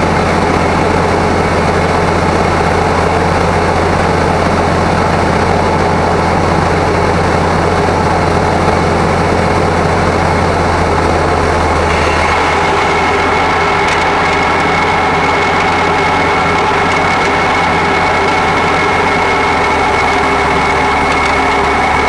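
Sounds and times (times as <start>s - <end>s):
truck engine running: 0.0s - 22.0s
thin high-pitched whine: 11.6s - 22.0s.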